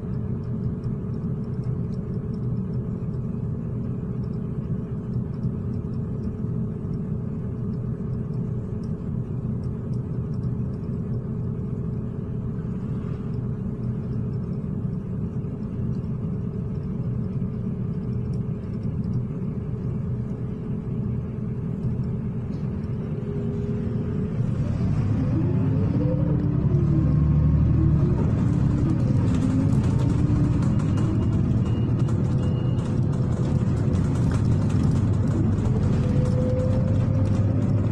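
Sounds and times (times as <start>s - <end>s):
bus engine: 0.0s - 37.9s
road rumble: 21.4s - 37.9s.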